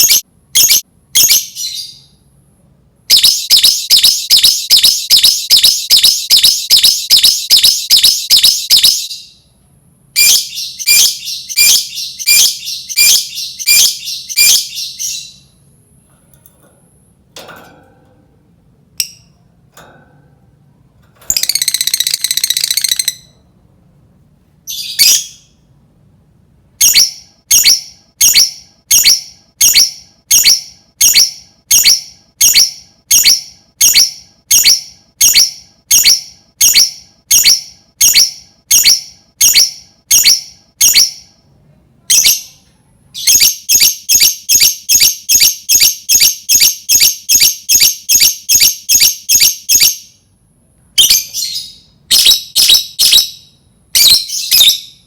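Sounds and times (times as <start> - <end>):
lovebird shrill repeated calls: 3.1 - 9.3, 10.2 - 15.4, 21.3 - 23.3, 26.8 - 41.2, 51.0 - 55.0.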